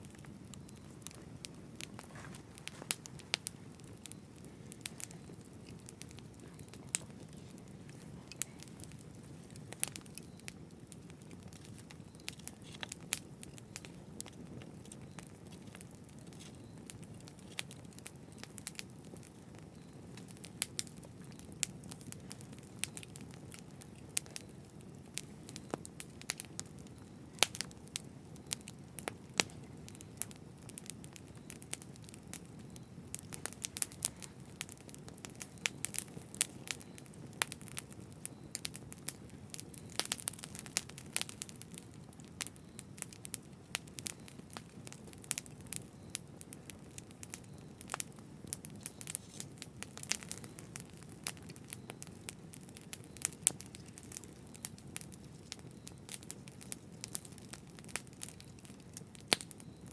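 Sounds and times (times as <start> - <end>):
campfire crackling and popping: 0.0 - 59.9.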